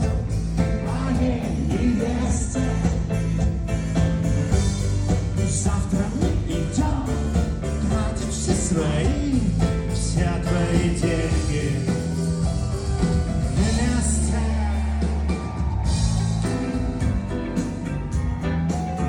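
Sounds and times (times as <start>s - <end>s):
steady bass line: 0.0s - 19.0s
person singing over a band: 0.6s - 3.4s, 5.1s - 15.6s.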